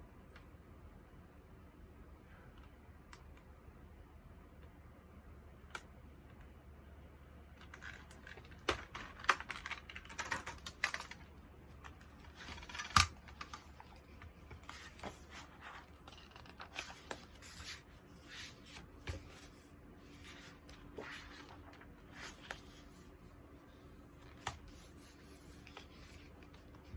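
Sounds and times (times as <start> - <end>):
packaging rustling and clicking: 7.6 - 22.9.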